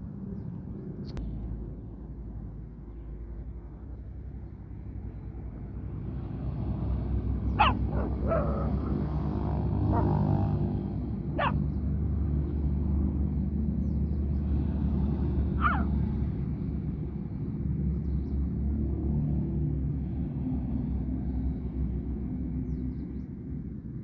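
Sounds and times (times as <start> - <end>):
dog barking: 7.5 - 10.6, 11.3 - 11.7, 15.6 - 16.1.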